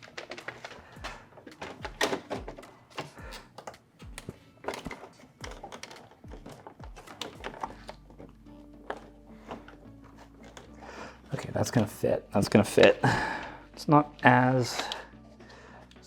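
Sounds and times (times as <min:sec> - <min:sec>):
plastic parts clicking and knocking: 0:00.0 - 0:12.0.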